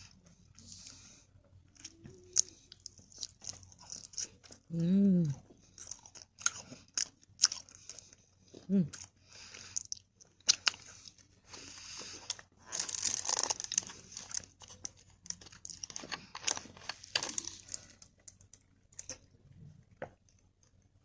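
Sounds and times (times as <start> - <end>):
plastic wrapper crinkling: 12.7 - 19.2.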